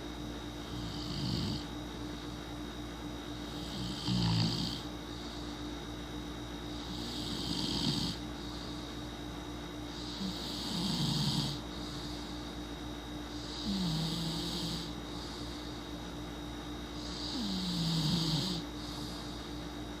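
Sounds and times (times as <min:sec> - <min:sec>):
steady low hum: 0:00.0 - 0:20.0
person snoring: 0:00.7 - 0:01.7, 0:03.4 - 0:05.4, 0:06.8 - 0:08.9, 0:09.9 - 0:12.4, 0:13.4 - 0:15.8, 0:17.0 - 0:19.5.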